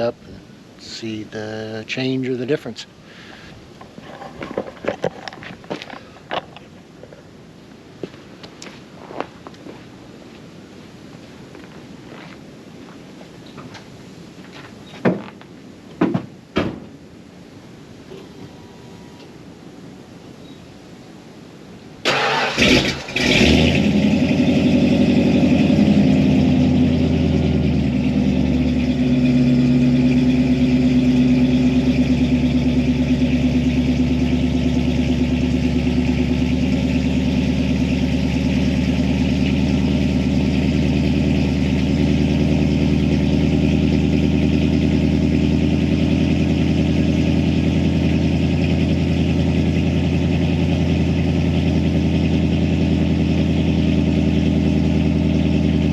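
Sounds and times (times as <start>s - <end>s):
engine cranking: 22.1s - 23.8s
engine idling fast: 22.1s - 55.9s.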